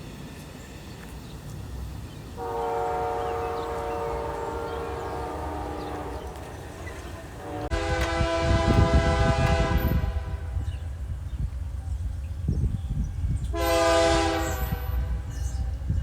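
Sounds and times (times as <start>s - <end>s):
train rumble: 0.0s - 16.0s
locomotive air horn: 2.4s - 10.7s, 13.5s - 15.7s.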